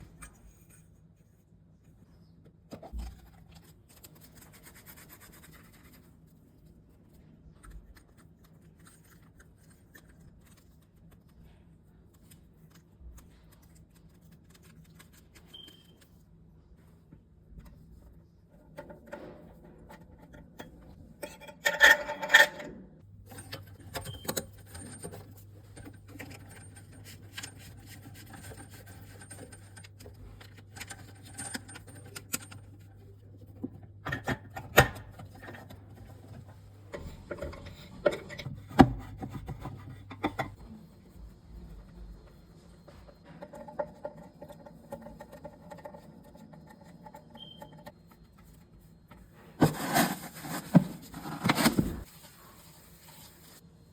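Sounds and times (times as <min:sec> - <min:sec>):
hands scraping plumbing parts: 0:18.5 - 0:53.6.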